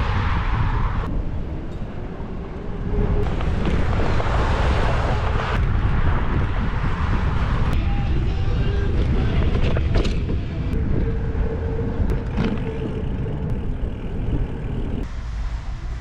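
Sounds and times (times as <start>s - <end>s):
wind buffeting microphone: 0.0s - 15.1s
road noise: 0.0s - 16.0s.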